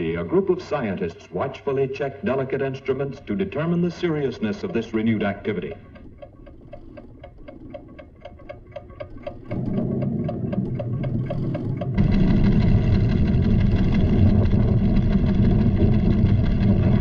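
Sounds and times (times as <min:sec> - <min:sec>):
instrument ticking: 0:02.0 - 0:13.7
deep volcanic rumbling: 0:09.4 - 0:17.0.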